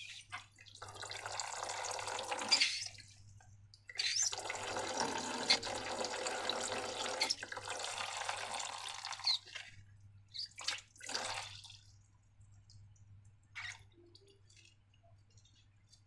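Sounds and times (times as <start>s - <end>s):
liquid pouring into container: 0.6s - 3.2s, 4.2s - 9.8s, 10.6s - 12.8s.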